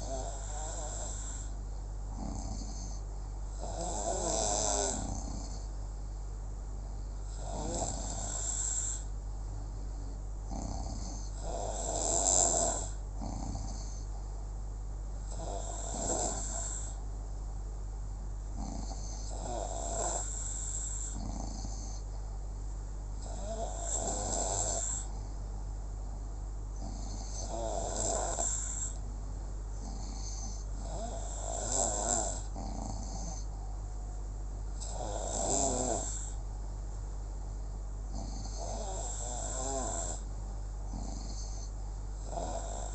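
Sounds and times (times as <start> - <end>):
person snoring: 0.0 - 1.6, 2.2 - 3.0, 3.6 - 5.7, 7.2 - 9.1, 10.5 - 14.1, 15.3 - 17.0, 18.6 - 22.1, 23.2 - 25.3, 26.8 - 29.0, 29.8 - 33.5, 34.8 - 36.4, 38.1 - 40.3, 40.9 - 42.9
steady low hum: 0.0 - 42.9.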